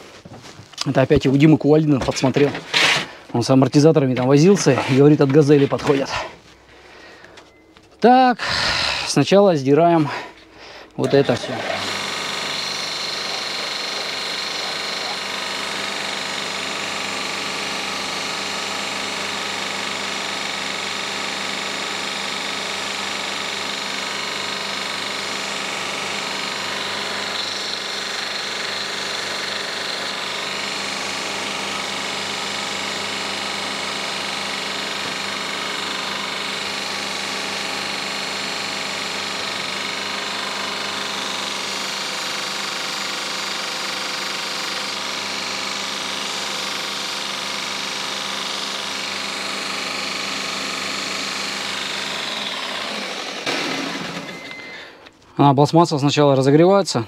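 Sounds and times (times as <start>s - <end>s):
angle grinder whining: 9.8s - 55.2s.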